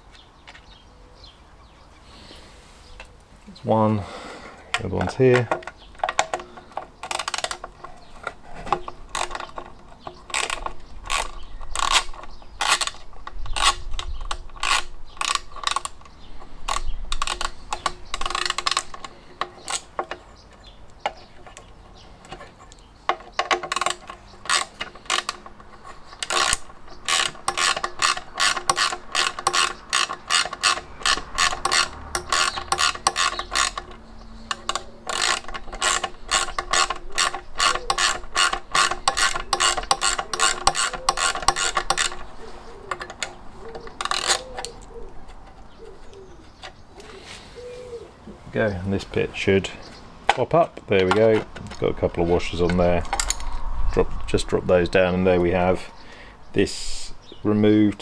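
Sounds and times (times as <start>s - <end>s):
socket ratchet clicking: 4.7s - 47.1s, 50.2s - 53.7s.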